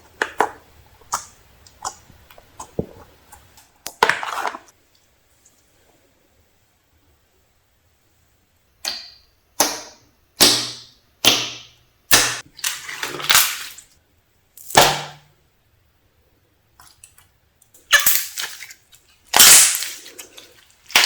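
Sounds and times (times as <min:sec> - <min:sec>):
slime popping and snapping: 0:19.3 - 0:21.0.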